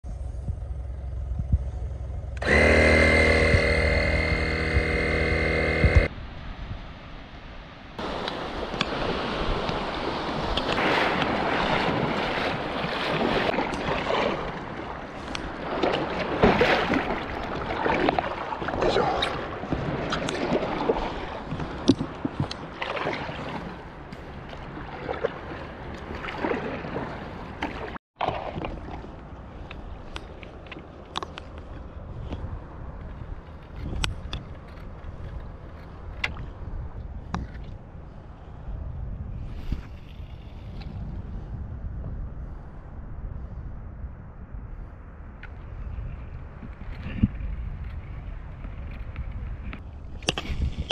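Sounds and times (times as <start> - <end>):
wind on microphone: 0.0 - 50.9
water splashing and sloshing: 7.9 - 41.6, 45.4 - 50.9.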